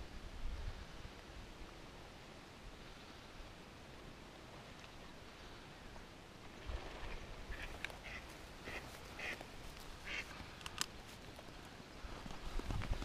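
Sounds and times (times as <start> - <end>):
ducks quacking: 7.5 - 10.4
sharp clicks: 10.6 - 11.0.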